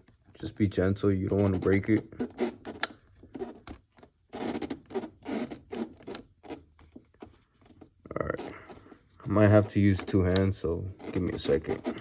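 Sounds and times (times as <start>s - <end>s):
hands rubbing and scraping hose: 9.3s - 12.0s.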